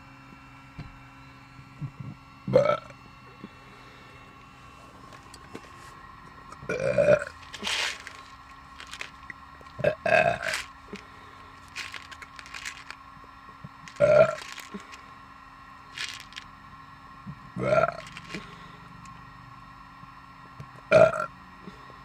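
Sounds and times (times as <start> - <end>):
person burping: 1.8 - 2.9, 6.7 - 7.3, 9.8 - 10.5, 14.0 - 14.4, 17.6 - 18.0, 20.9 - 21.3
breathy sounds: 13.7 - 15.2, 17.6 - 19.1.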